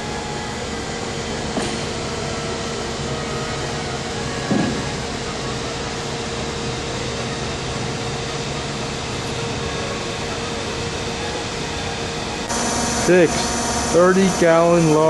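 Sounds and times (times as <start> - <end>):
surface grinder whining hum: 8.5 - 15.0.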